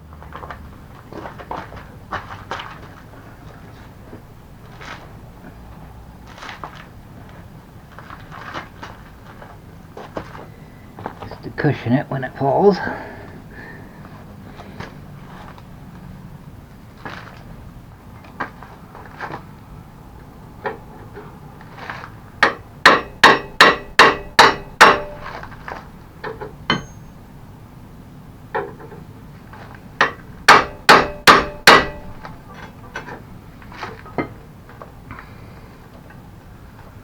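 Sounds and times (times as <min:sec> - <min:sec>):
hammer ringing on metal: 0:22.4 - 0:25.4, 0:26.7 - 0:27.2, 0:30.0 - 0:32.3.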